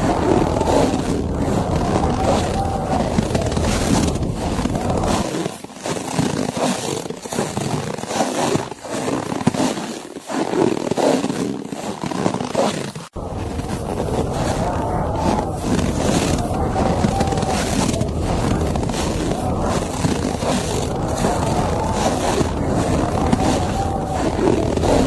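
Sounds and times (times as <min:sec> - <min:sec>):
blizzard wind: 0:00.0 - 0:05.3, 0:13.2 - 0:25.0.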